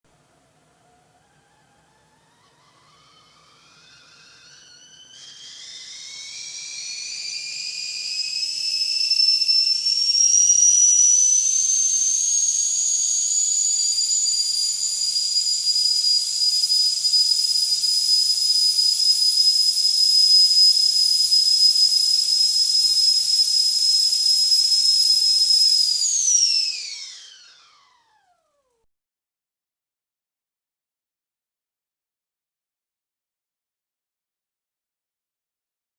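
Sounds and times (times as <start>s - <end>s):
kettle whistling: 0.6s - 28.4s
steam hissing: 3.6s - 10.5s, 13.2s - 27.1s.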